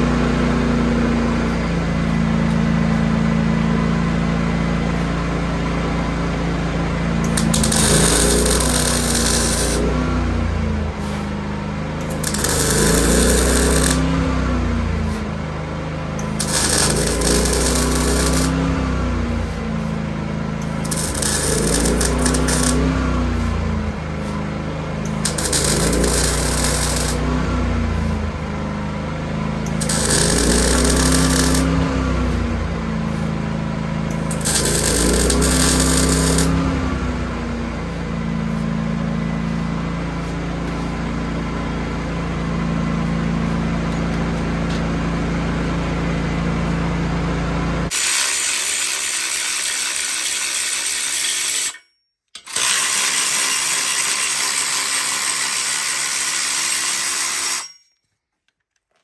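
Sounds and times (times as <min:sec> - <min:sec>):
power tool humming on metal: 0:00.0 - 0:57.8.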